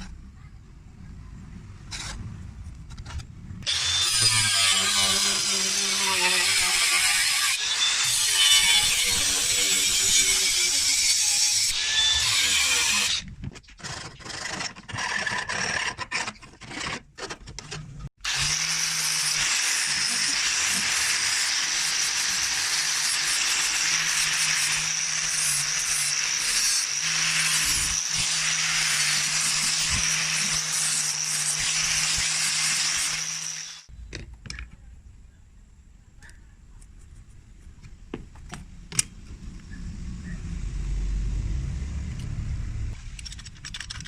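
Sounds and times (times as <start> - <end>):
grinder grinding: 3.6 - 17.0, 18.2 - 33.9
low hum: 38.7 - 43.5.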